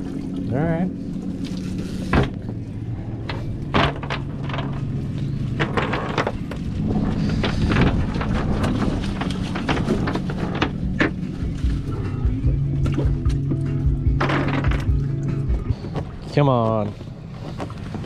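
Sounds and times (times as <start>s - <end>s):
outboard engine idling: 0.0s - 18.0s
gear knocking and clattering: 3.2s - 11.8s, 14.0s - 16.0s.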